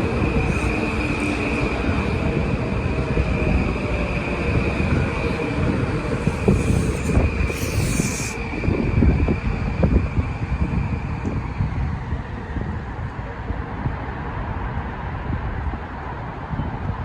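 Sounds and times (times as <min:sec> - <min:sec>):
thin wheel squeal: 0:00.0 - 0:01.9, 0:06.0 - 0:08.8.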